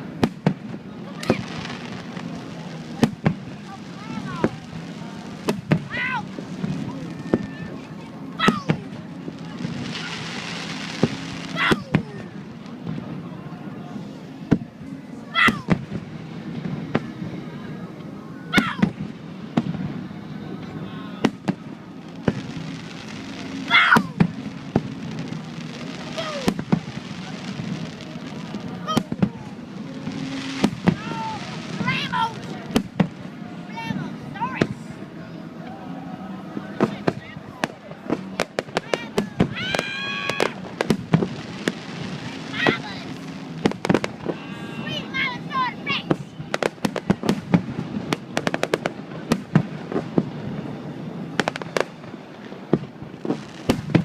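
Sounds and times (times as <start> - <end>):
fireworks bangs: 0.0 - 35.2, 36.4 - 54.0
crowd murmuring: 0.0 - 54.0
people calling out: 1.0 - 14.4, 15.0 - 15.9, 17.4 - 19.0, 22.3 - 24.4, 25.2 - 46.6.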